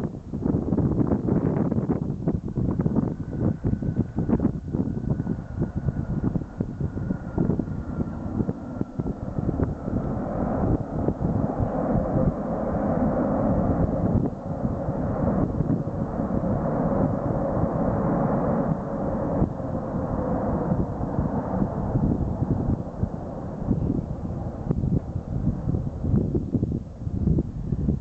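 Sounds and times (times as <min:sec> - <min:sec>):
airliner engines rushing: 0:00.0 - 0:28.0
wind buffeting microphone: 0:00.0 - 0:28.0.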